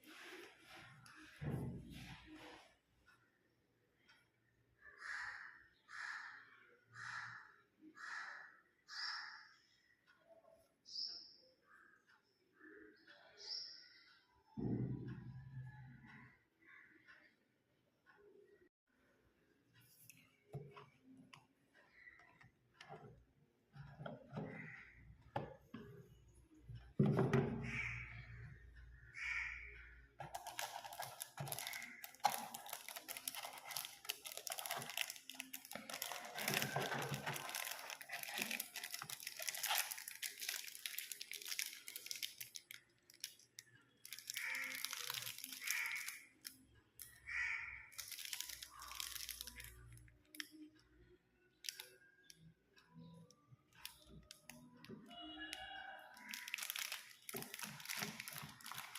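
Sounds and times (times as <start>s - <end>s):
packaging crinkling and tearing: 30.2s - 46.2s, 47.9s - 50.4s, 56.1s - 58.9s.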